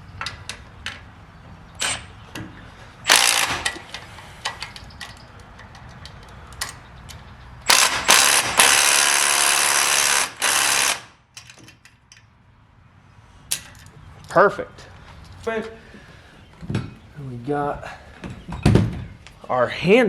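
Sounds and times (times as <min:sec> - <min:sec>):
impact wrench bursts: 0:03.0 - 0:04.2, 0:07.6 - 0:11.2
metal clicks of tools: 0:03.1 - 0:07.2, 0:11.4 - 0:12.3.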